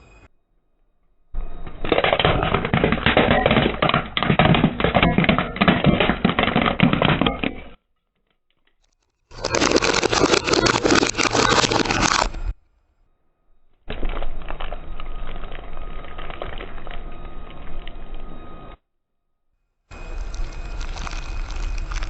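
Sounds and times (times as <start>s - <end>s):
brittle objects crunching: 8.8s - 12.5s, 20.0s - 22.0s.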